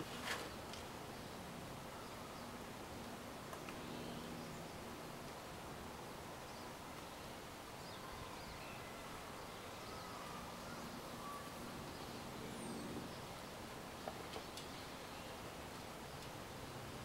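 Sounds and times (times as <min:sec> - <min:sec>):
distant bird chirps: 0:06.4 - 0:16.3.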